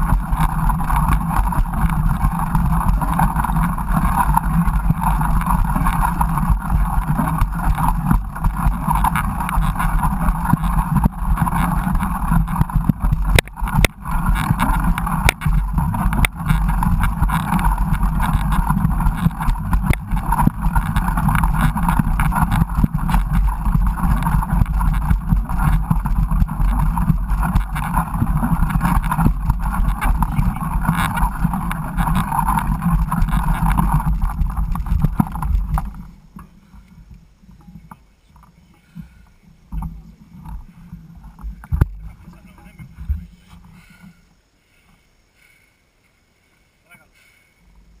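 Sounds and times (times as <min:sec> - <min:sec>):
bike knocking over bumps: 0:00.0 - 0:36.6
wind noise: 0:00.0 - 0:44.2
mountain bike riding rumble: 0:00.0 - 0:45.7.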